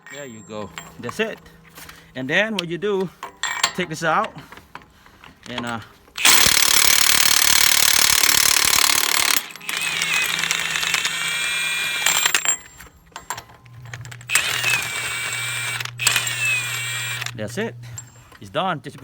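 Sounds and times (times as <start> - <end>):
impact wrench spinning whine: 5.6 - 18.4
impact wrench hammering: 6.2 - 13.6, 14.2 - 18.3.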